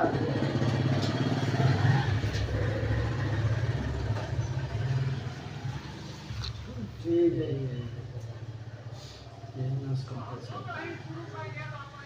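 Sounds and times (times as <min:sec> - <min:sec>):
small engine idling: 0:00.0 - 0:06.5.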